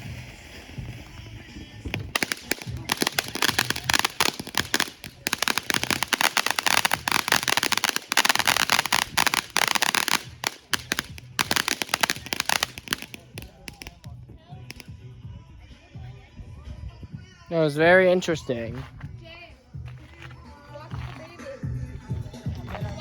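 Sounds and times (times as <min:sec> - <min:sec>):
fireworks crackling: 0:00.0 - 0:14.1, 0:14.7 - 0:14.9.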